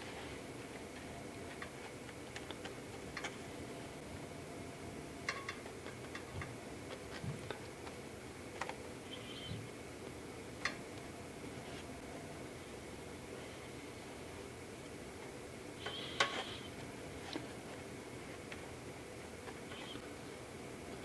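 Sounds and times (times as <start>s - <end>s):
steady background hiss: 0.0s - 21.0s
small clicks and taps: 0.8s - 3.4s.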